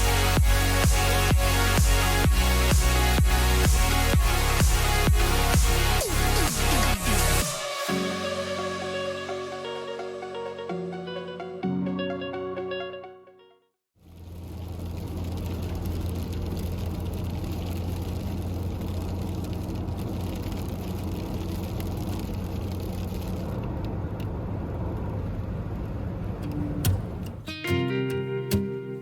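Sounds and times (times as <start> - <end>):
engine and road drone: 0.0 - 13.0, 14.0 - 27.5
sharp knocks: 26.8 - 27.4.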